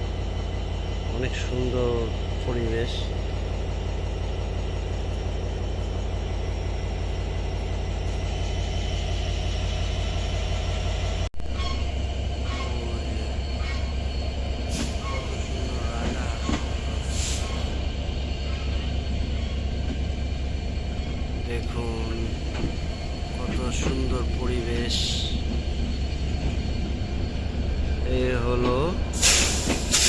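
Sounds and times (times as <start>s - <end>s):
passenger train rumble: 0.0s - 30.0s
short high squeaks: 14.8s - 16.8s.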